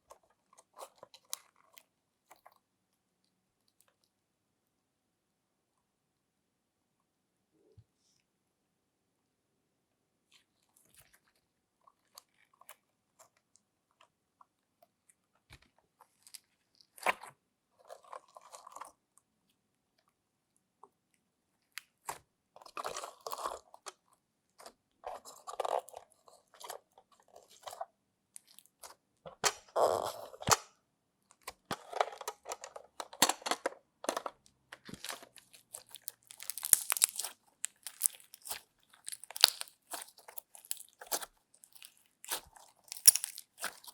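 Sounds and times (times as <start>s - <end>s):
slime squished by hand: 34.8s - 43.9s.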